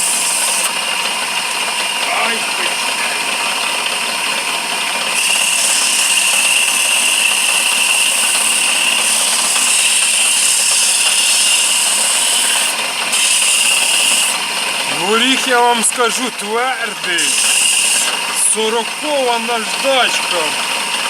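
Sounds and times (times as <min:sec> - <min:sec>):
lathe machine hum: 0:00.0 - 0:21.0
sandpaper sanding wood: 0:05.2 - 0:14.4, 0:17.1 - 0:18.2.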